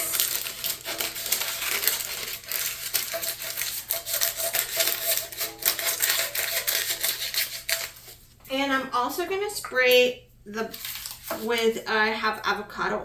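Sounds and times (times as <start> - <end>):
scissors snipping paper: 0.0 - 8.1, 10.7 - 11.6
paper rustling: 0.0 - 8.4, 10.7 - 11.6.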